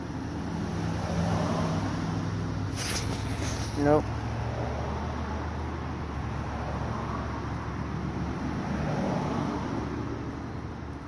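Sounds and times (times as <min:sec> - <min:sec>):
even hiss: 0:02.7 - 0:04.3.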